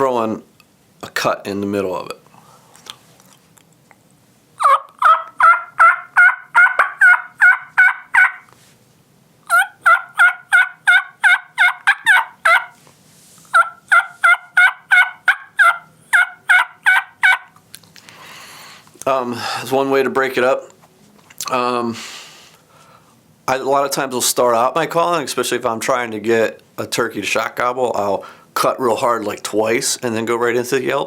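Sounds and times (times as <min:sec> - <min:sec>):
turkey call yelps: 0:04.6 - 0:08.5, 0:09.5 - 0:12.8, 0:13.5 - 0:17.6.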